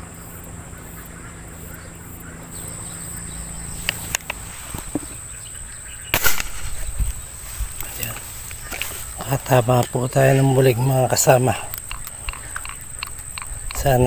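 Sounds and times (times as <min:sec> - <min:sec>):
insects chirring: 0:00.0 - 0:14.0
air gun shot: 0:06.1 - 0:07.2
sharp clicks: 0:06.2 - 0:07.2, 0:11.2 - 0:14.0.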